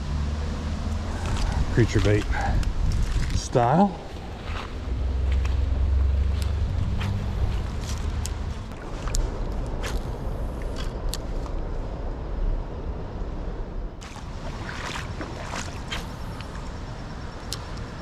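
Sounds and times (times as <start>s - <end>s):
wind noise on microphone: 1.0s - 18.0s
crunching and scuffing: 1.2s - 5.6s, 6.2s - 11.6s.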